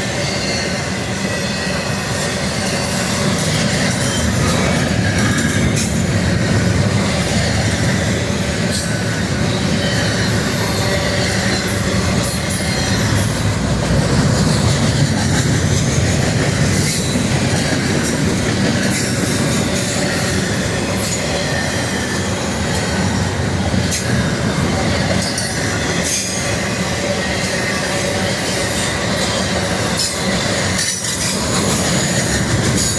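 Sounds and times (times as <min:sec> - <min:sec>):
railroad cars rumbling: 0:00.0 - 0:32.9
wheels clicking over rail joints: 0:01.4 - 0:32.9
faint high wheel squeal: 0:08.8 - 0:14.6.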